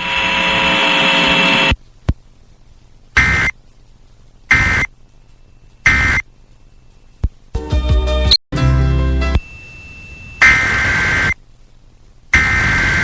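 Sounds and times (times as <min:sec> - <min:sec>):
screeching data bursts: 0:00.0 - 0:01.8, 0:03.2 - 0:03.6, 0:04.5 - 0:04.9, 0:05.5 - 0:06.9, 0:09.4 - 0:11.4, 0:12.3 - 0:13.0
steady buzz with overtones: 0:00.0 - 0:07.6, 0:08.7 - 0:13.0.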